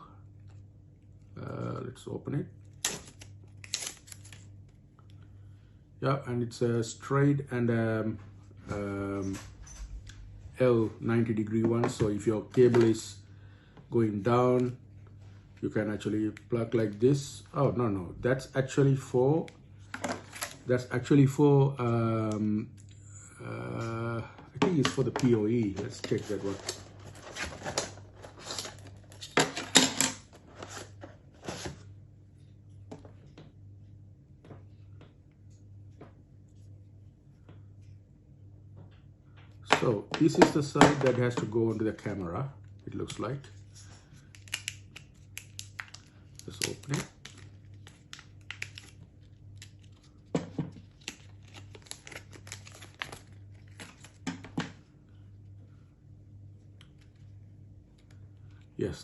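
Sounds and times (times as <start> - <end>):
faint steady hum: 0.0 - 59.0
packaging rustling and crinkling: 24.9 - 29.4, 43.8 - 54.5.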